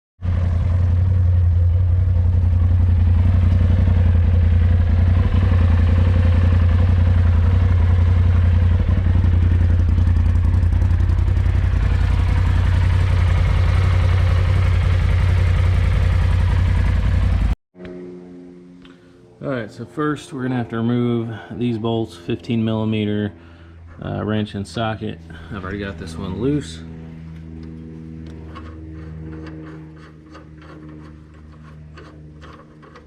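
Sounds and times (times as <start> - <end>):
engine running at low revs: 0.2 - 33.0
rattle and clatter: 27.6 - 33.0.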